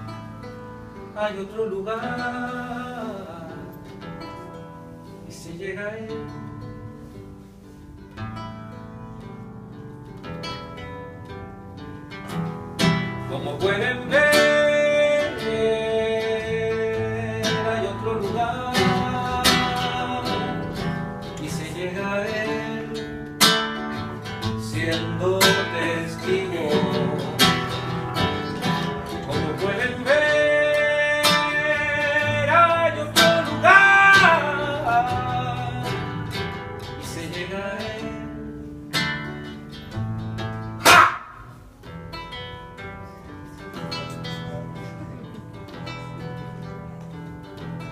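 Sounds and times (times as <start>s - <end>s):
live band with acoustic guitar: 0.0s - 47.9s.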